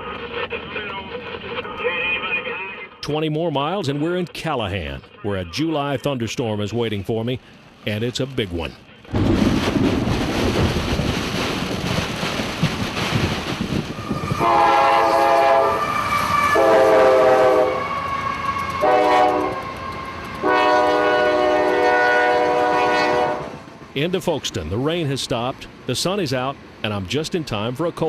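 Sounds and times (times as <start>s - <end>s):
train rumbling and clattering: 0.0s - 5.7s, 6.8s - 28.0s
locomotive air horn: 14.1s - 23.6s.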